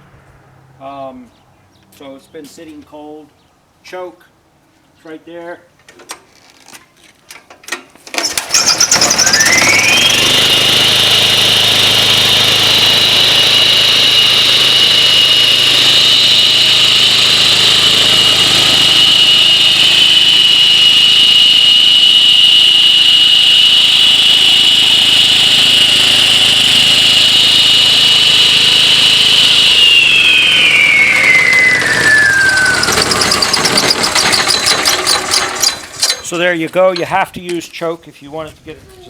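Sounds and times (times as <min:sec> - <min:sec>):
concrete saw engine whining: 0:08.2 - 0:37.8.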